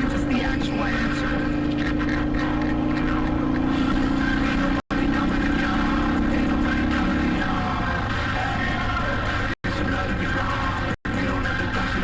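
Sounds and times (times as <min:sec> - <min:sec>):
motorcycle engine cruising: 0:00.0 - 0:12.0
road and wind noise: 0:00.0 - 0:12.0.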